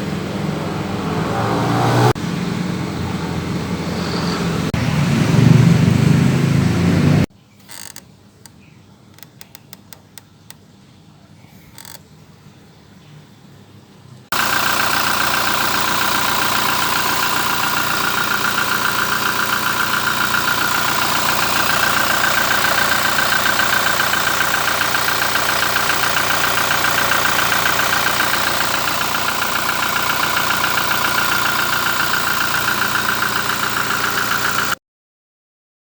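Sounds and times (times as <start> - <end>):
machine whirring and rattling: 14.3 - 34.8.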